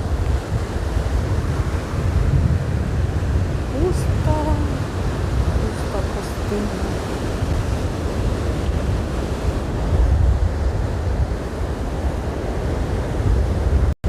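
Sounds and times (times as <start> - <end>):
surf breaking on beach: 0.0 - 13.9
wind buffeting microphone: 0.0 - 14.0.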